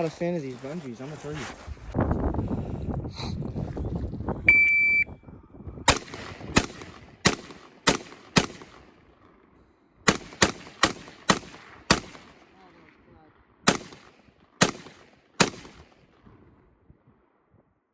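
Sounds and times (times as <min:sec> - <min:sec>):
shot timer beep: 0:04.5 - 0:05.1
gunshots: 0:05.9 - 0:09.0, 0:10.1 - 0:12.7, 0:13.7 - 0:16.1.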